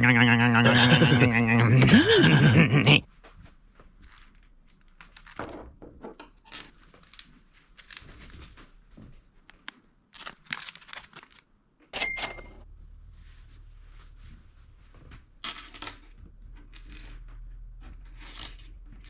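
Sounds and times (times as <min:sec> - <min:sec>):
plastic packaging crinkling: 0:04.0 - 0:05.4, 0:10.1 - 0:11.5.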